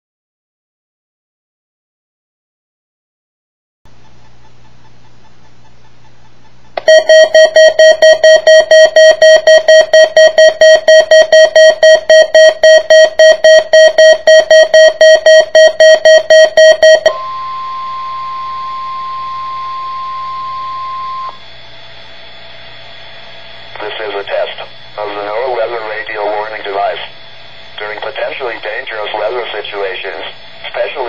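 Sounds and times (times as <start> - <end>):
rapid pulsing alarm beeps: 6.8 - 21.5, 23.7 - 31.0
steady alarm tone from radio: 6.8 - 21.6, 23.7 - 31.0.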